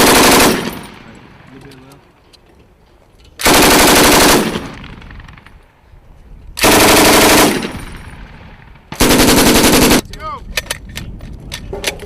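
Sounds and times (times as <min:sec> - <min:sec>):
machine gun firing bursts: 0:00.0 - 0:01.0, 0:03.4 - 0:05.3, 0:06.6 - 0:07.9, 0:08.9 - 0:10.0.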